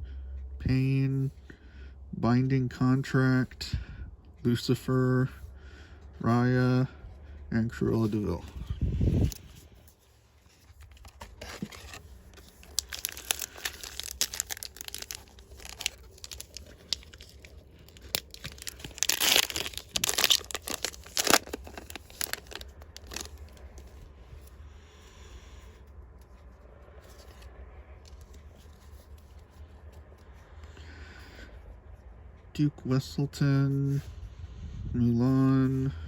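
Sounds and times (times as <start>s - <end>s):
foil wrapper tearing and crinkling: 10.8s - 23.9s.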